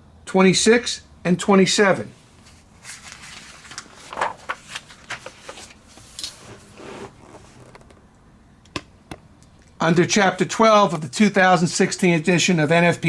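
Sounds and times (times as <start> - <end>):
pages turning with soft clicks: 2.4 - 8.0
paper rustling: 2.4 - 8.0.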